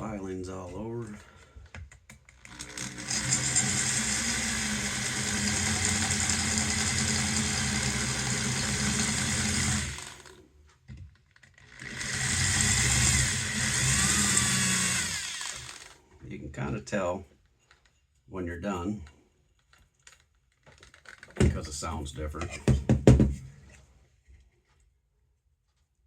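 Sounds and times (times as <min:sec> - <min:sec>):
electric drill drilling metal: 0:02.4 - 0:10.4, 0:11.5 - 0:16.0.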